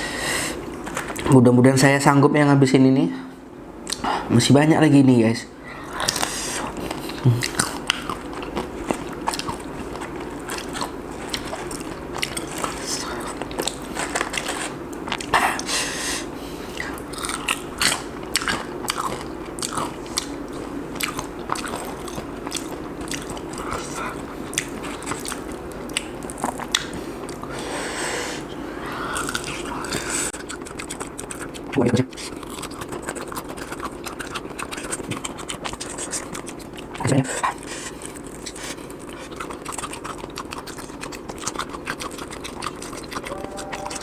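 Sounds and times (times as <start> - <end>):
low room hum: 0.0 - 44.0
chewing and mouth smacks: 0.7 - 1.3, 3.8 - 4.1, 5.9 - 15.7, 16.7 - 27.5, 29.1 - 44.0
crunching fried chicken: 5.8 - 15.7, 16.8 - 27.5, 29.0 - 44.0.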